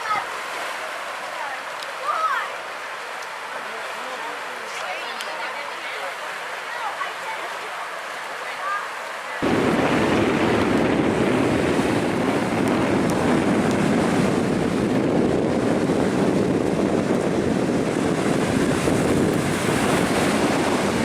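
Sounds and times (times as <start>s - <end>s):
ocean surf: 0.0s - 21.0s
wind noise on microphone: 9.4s - 21.0s.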